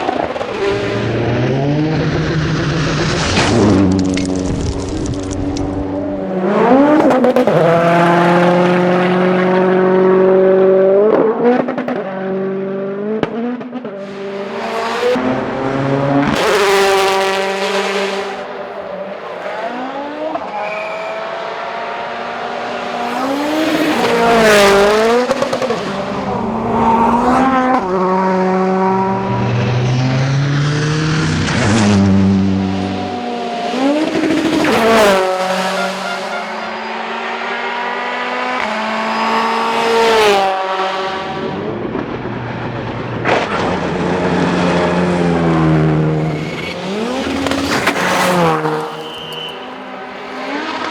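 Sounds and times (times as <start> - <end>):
rally car engines revving: 0.0 - 50.9
car passing close by: 14.0 - 20.5, 21.8 - 41.6, 43.3 - 50.9.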